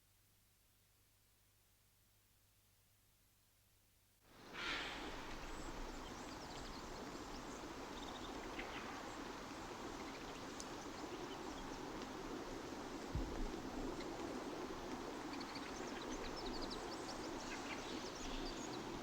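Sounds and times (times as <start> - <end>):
outdoor background noise: 4.0 - 19.0.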